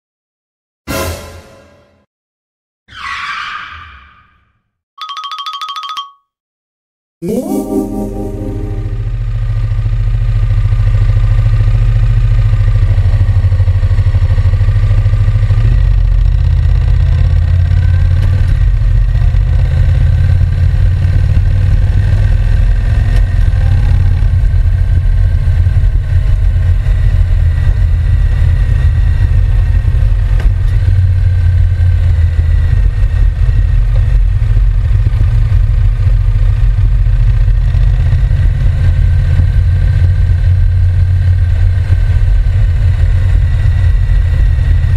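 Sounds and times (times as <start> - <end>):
motorcycle engine running: 9.0 - 44.9.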